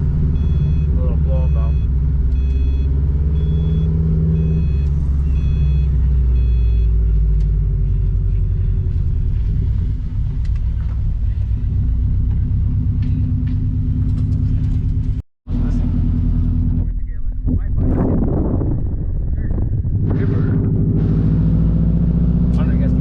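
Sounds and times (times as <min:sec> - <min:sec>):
car engine pulling: 0:00.0 - 0:23.0
high electronic beep: 0:00.4 - 0:07.0.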